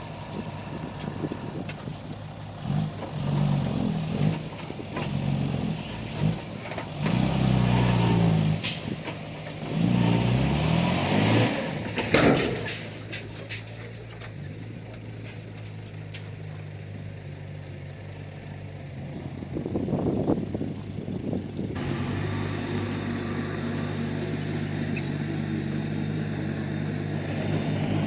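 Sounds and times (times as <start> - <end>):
bulldozer diesel engine revving: 0.0 - 28.0
sharp metal knocks and clanks: 11.9 - 13.6.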